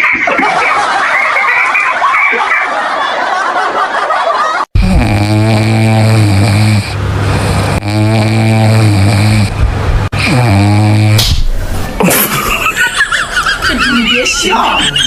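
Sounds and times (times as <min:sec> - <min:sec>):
person snoring loudly: 0:04.8 - 0:11.3.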